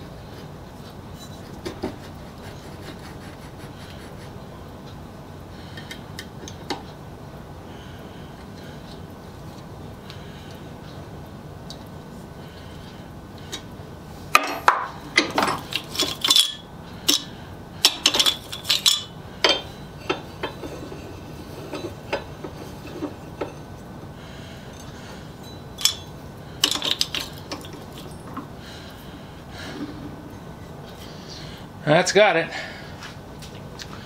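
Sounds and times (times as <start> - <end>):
metal tools clinking together: 14.4 - 17.2, 17.9 - 23.6, 24.8 - 28.4.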